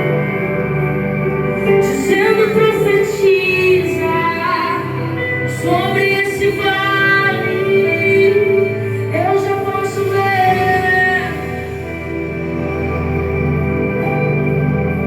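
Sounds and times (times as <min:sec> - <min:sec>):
soft synth pad: 0:00.0 - 0:15.0
woman singing with vibrato: 0:01.6 - 0:13.2.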